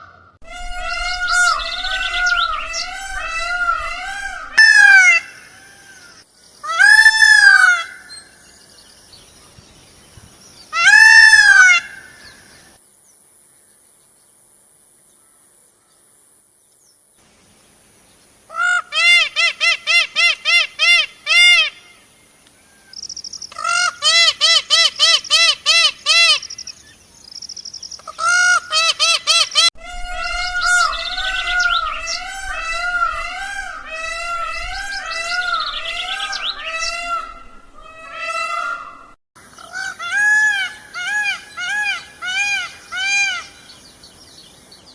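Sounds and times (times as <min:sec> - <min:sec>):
peafowl calling: 0:00.0 - 0:08.4, 0:10.7 - 0:12.7, 0:18.5 - 0:26.8, 0:27.9 - 0:43.8.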